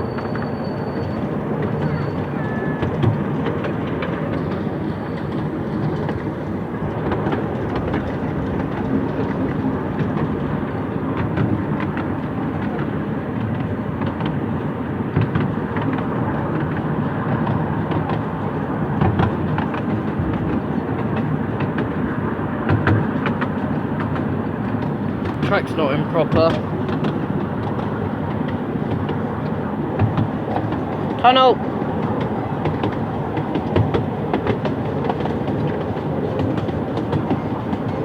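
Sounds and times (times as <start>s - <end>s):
train wheels rumbling on rails: 0.0s - 38.0s
clicks over rail joints: 1.4s - 38.0s.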